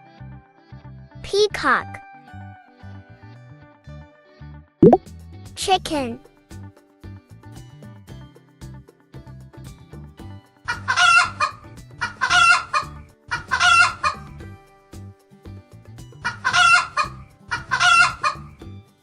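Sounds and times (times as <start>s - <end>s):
chicken calling: 16.4s - 18.4s.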